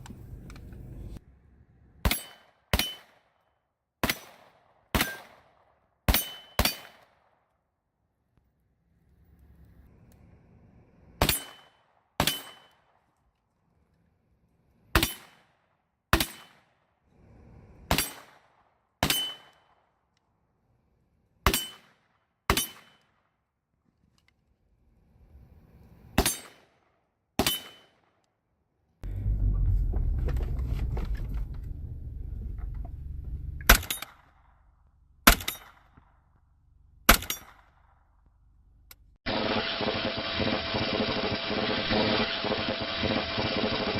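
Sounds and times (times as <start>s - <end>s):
gunshots: 4.0s - 7.3s, 15.0s - 16.7s, 17.9s - 19.5s
loud low rumble: 29.0s - 33.7s.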